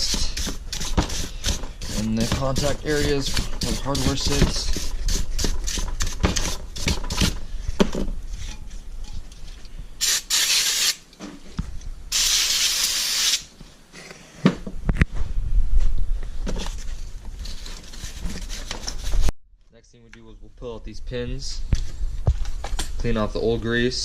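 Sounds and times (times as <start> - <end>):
brush scrubbing metal: 0.0 - 7.4
aerosol spray hissing: 10.0 - 11.0, 12.1 - 13.5.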